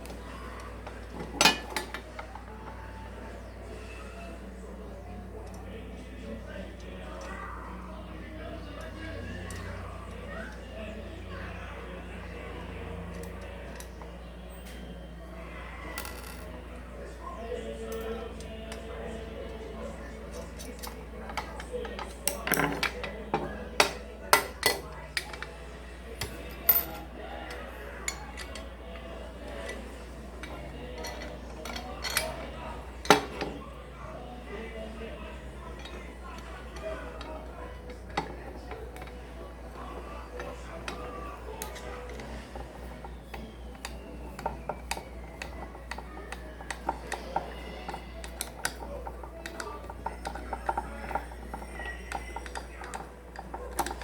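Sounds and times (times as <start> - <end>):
metal parts clinking and knocking: 0.8 - 2.4, 20.3 - 25.5, 26.2 - 28.7, 30.4 - 33.6, 35.7 - 54.0.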